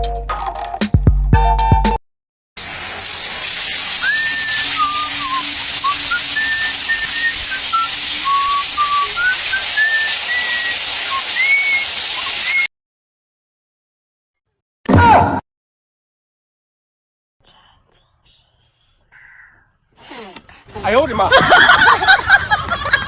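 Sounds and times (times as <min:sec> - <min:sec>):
steady hiss of running water: 0:02.6 - 0:12.7
whistled notes: 0:03.9 - 0:12.7.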